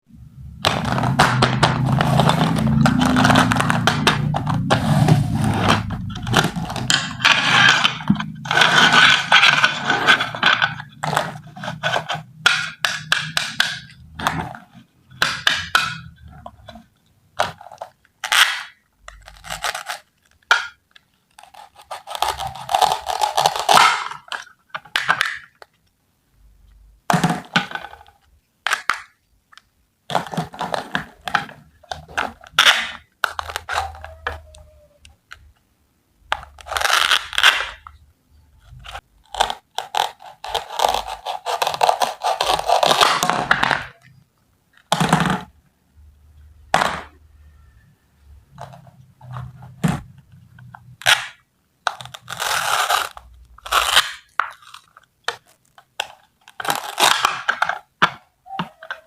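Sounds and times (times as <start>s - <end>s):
toy pieces scraping and knocking: 0.6s - 25.7s, 30.1s - 35.5s, 36.3s - 44.1s, 48.5s - 59.0s
packaging crinkling and rustling: 17.4s - 20.5s, 51.2s - 59.0s.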